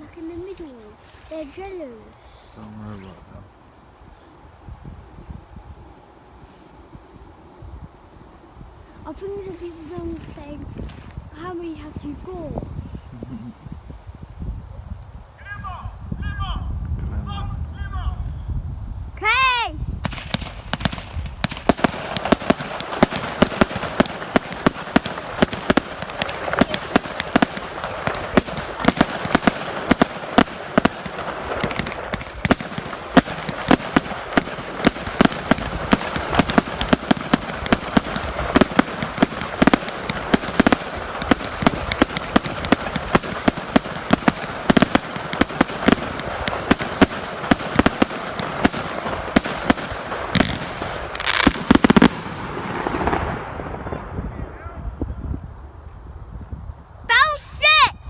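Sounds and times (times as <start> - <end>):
firework crackling hiss: 0.0 - 4.0, 5.3 - 14.3, 20.0 - 54.3
firework bangs: 20.0 - 54.8.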